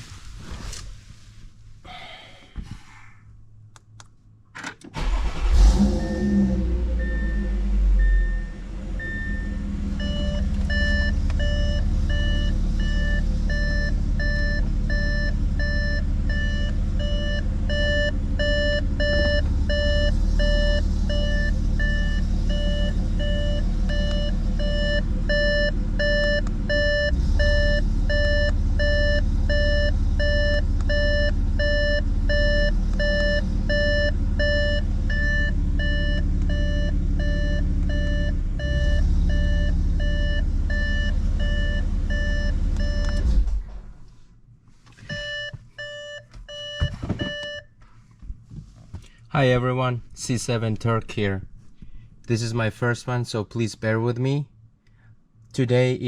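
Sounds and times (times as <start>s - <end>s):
car engine idling: 4.9s - 44.2s.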